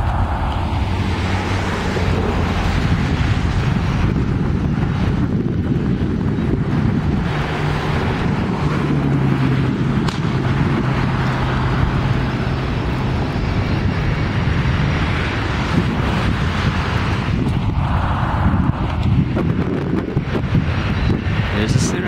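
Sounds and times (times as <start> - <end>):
jet engines humming: 0.0 - 22.0
wind buffeting microphone: 0.0 - 22.0.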